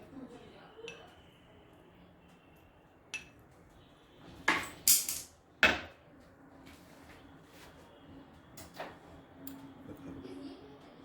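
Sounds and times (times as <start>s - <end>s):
kitchenware clattering: 4.5s - 6.0s.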